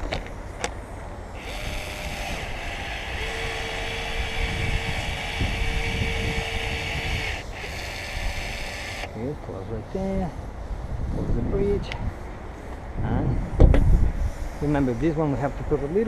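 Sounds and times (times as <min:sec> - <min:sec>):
urethane gun hissing motor: 0:01.3 - 0:09.1.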